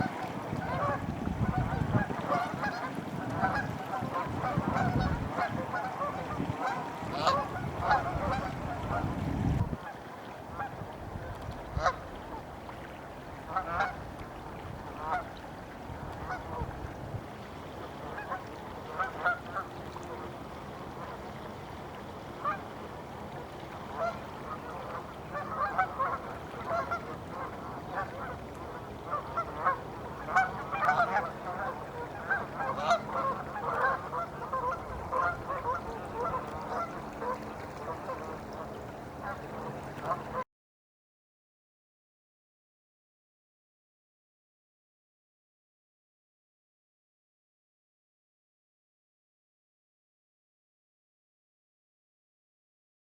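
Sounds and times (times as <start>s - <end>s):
geese honking: 0.0s - 9.2s, 11.8s - 12.4s, 13.5s - 14.0s, 14.9s - 15.4s, 16.2s - 16.7s, 18.0s - 20.3s, 22.4s - 22.6s, 24.0s - 40.4s.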